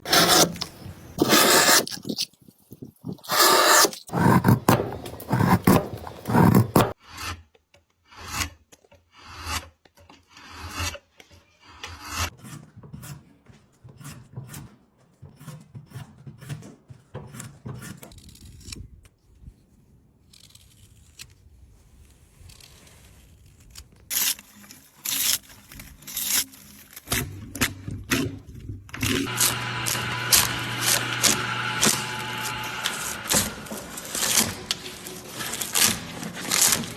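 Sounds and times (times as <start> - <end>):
blade shaving wood: 0.0 - 7.0, 22.4 - 36.9.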